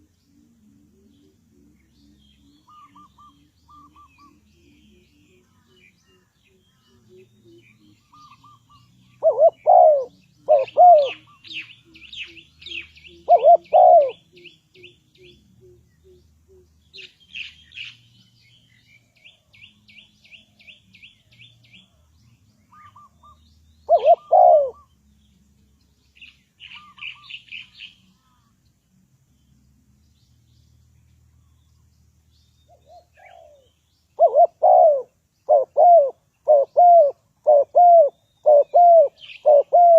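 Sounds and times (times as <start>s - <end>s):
dove cooing: 0.0s - 17.9s, 22.7s - 24.9s, 32.7s - 39.9s
small bird chirping trills: 0.0s - 39.9s.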